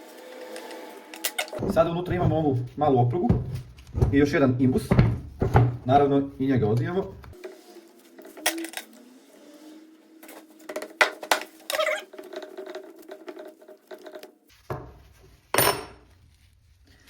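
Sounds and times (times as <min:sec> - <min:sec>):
loud knocks: 0:03.3 - 0:05.9.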